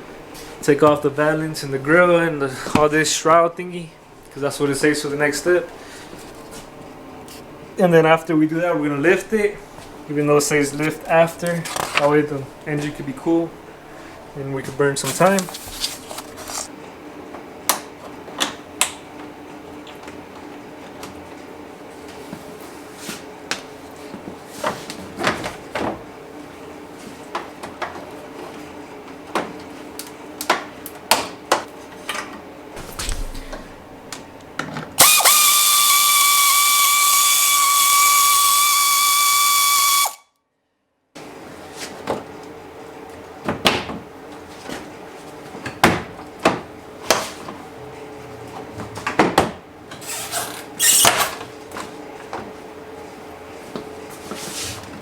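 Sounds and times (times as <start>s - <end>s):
power drill whining: 35.0s - 40.2s.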